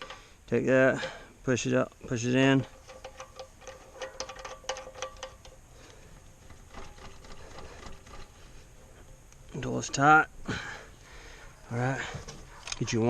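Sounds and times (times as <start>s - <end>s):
hose fitting clicking and rattling: 2.6s - 10.2s, 12.2s - 13.0s.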